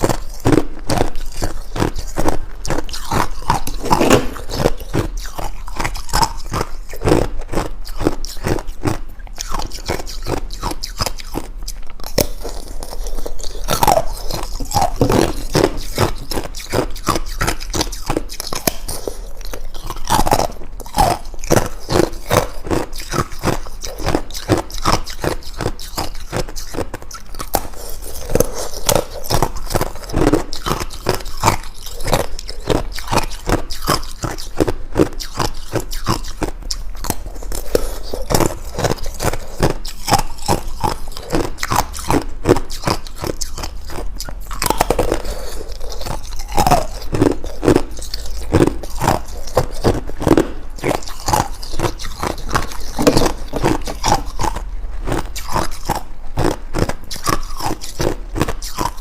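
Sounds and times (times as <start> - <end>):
ice cubes crunching while chewed: 0.0 - 59.0.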